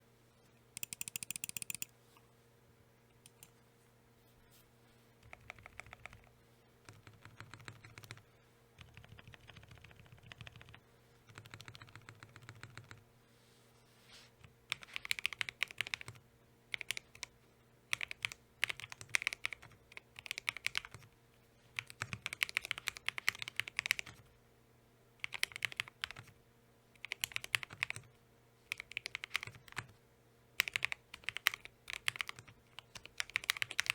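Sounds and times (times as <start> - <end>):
faint steady hum: 0.0 - 33.9
mechanical keyboard typing: 0.8 - 1.9, 5.2 - 8.2, 8.8 - 13.0, 14.7 - 17.3, 17.9 - 21.1, 21.8 - 24.2, 25.2 - 26.3, 27.0 - 28.1, 28.7 - 29.9, 30.6 - 33.9.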